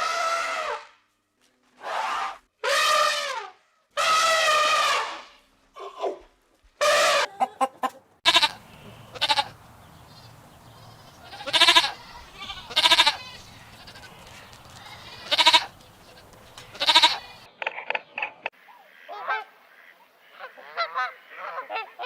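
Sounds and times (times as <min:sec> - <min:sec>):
goat bleating: 0:07.0 - 0:17.5.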